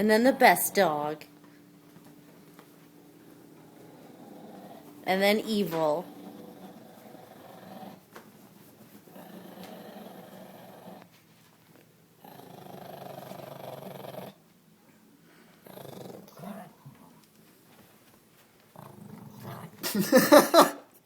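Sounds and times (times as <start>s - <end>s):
dog growling: 3.0s - 8.1s, 9.1s - 11.1s, 12.2s - 14.4s, 15.6s - 17.1s, 18.7s - 19.9s.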